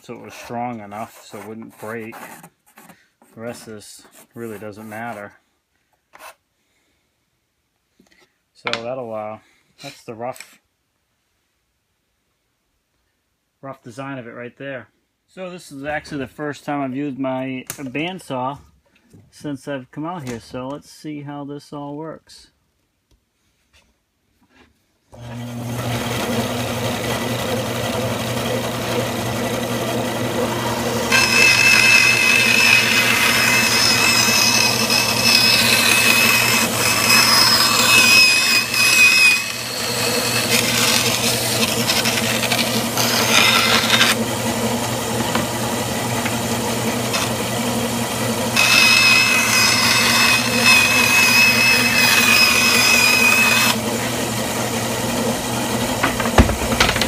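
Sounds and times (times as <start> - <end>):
bandsaw blade cutting wood: 25.2 - 57.0
bandsaw motor running: 25.2 - 57.0.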